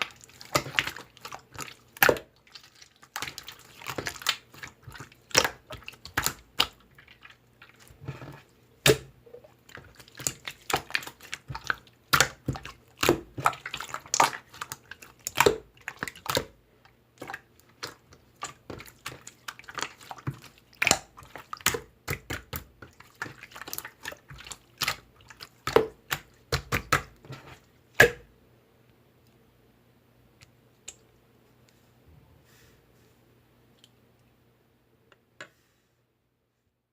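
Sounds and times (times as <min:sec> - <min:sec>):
slime squelching and popping: 0:00.0 - 0:16.6, 0:17.2 - 0:28.3.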